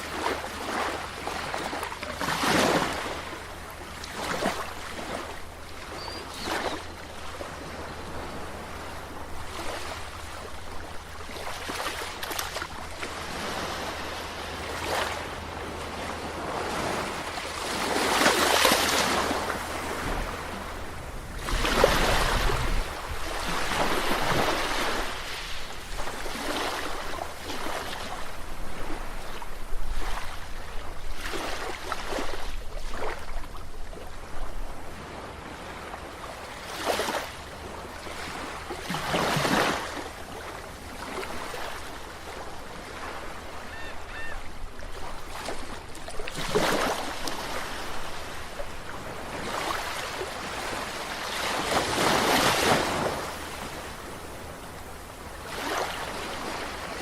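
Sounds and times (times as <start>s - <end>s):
sea waves washing on shore: 0.0s - 57.0s.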